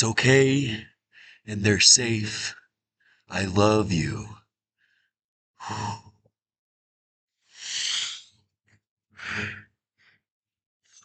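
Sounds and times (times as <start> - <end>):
man breathing heavily: 1.1 - 1.5, 7.5 - 8.3, 9.2 - 9.6.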